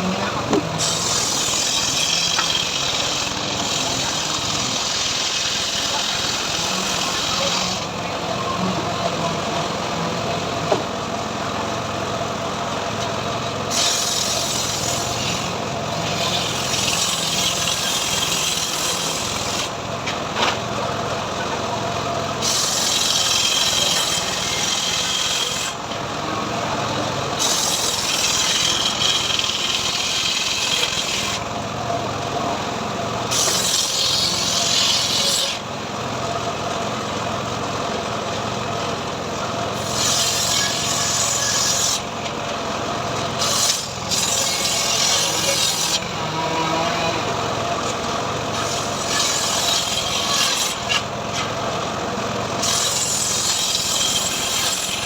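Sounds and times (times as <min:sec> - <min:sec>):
sawmill engine running: 0:00.0 - 0:55.0
saw blade hissing through wood: 0:00.8 - 0:08.0, 0:13.7 - 0:19.7, 0:22.4 - 0:25.8, 0:27.4 - 0:31.4, 0:33.3 - 0:35.6, 0:39.8 - 0:42.1, 0:43.4 - 0:47.2, 0:48.5 - 0:51.1, 0:52.6 - 0:55.0.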